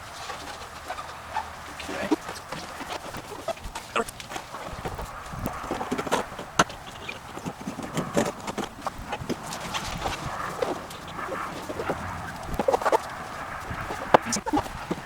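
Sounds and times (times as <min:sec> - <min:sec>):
backing peeling: 0:00.0 - 0:15.0
hands working sticky mat: 0:02.0 - 0:15.0.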